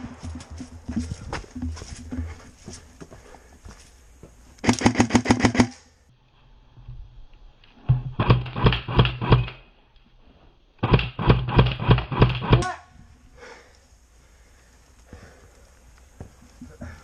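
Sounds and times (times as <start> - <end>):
airsoft gun rapid firing: 4.6 - 5.8, 8.2 - 9.6, 10.8 - 12.8.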